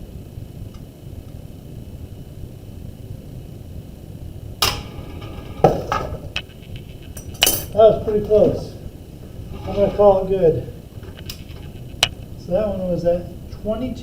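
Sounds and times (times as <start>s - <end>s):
carts rolling along a track: 4.6s - 6.2s
carts knocking against end stops: 4.6s - 6.5s.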